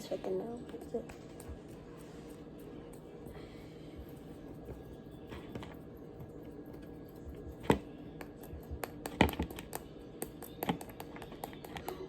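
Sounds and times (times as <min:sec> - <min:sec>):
small objects clicking and tapping: 0:07.6 - 0:12.0.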